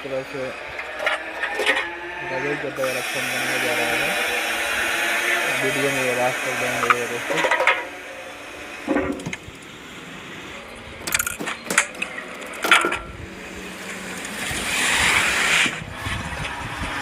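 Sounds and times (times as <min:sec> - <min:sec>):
hiss: 0:02.8 - 0:07.5, 0:14.5 - 0:15.8.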